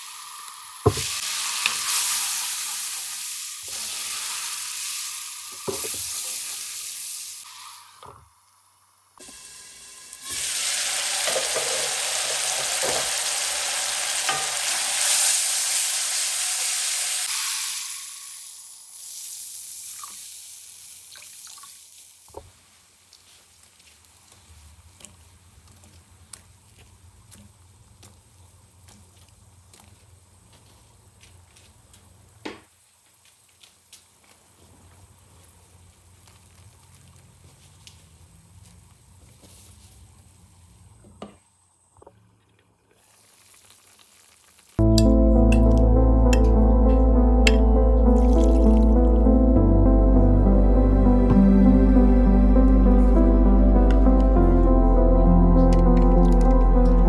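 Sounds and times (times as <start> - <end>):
food sizzling in hot oil: 0.0 - 22.4, 43.1 - 44.8.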